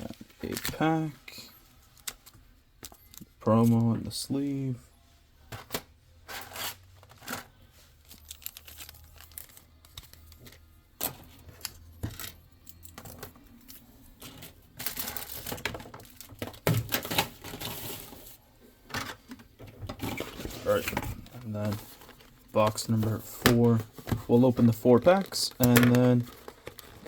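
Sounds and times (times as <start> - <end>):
plastic wrap crinkling and tearing: 7.9 - 10.7, 14.2 - 18.2, 24.7 - 27.0.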